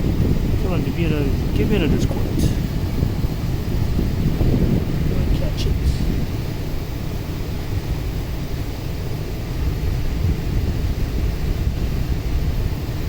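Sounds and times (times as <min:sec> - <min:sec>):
air conditioner blower rumble: 0:00.0 - 0:13.0.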